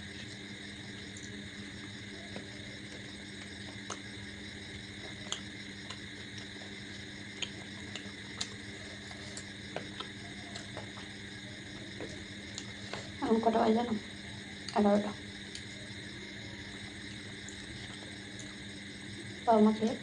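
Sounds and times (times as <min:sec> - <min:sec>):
steady low hum: 0:00.0 - 0:20.0
chewing clicks and smacks: 0:00.2 - 0:01.4, 0:02.3 - 0:11.2, 0:11.8 - 0:13.1, 0:15.4 - 0:15.8, 0:17.1 - 0:18.6.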